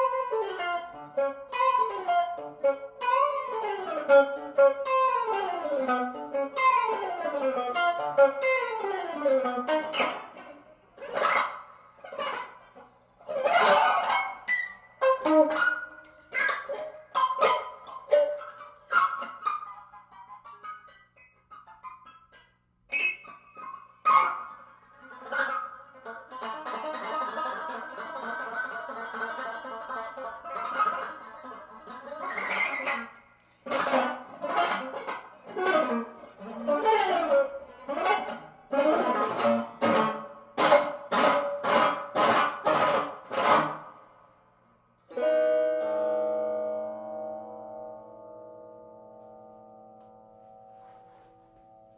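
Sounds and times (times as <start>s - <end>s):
electric guitar chords: 45.1s - 51.9s.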